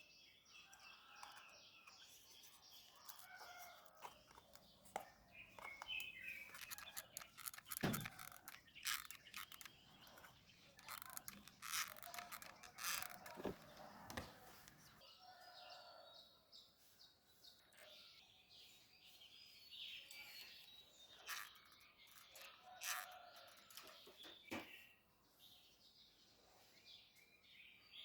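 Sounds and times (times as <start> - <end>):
small scattered clicks and taps: 0.7 - 15.0
faint bird chirps: 16.8 - 28.0.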